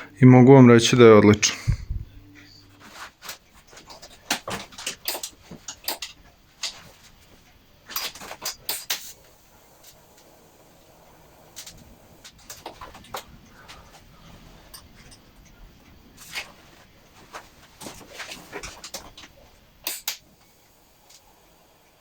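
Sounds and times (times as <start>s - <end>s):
tools and metal parts clicking: 3.3s - 10.3s, 11.5s - 13.3s, 17.8s - 20.2s.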